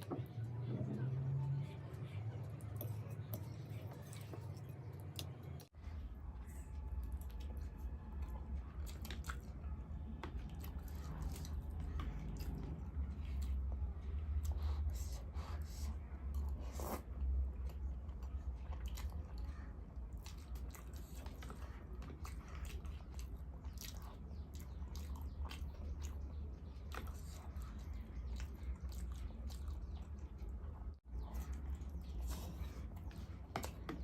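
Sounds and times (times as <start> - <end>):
chewing and biting food: 6.4 - 15.5, 16.3 - 34.0.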